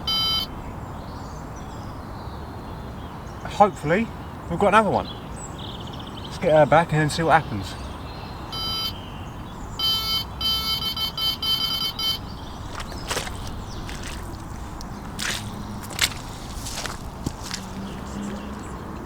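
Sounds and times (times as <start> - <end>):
bite alarm high beeps: 0.0 - 0.6, 8.5 - 9.0, 9.8 - 14.0
knocks and rustles: 12.5 - 18.6.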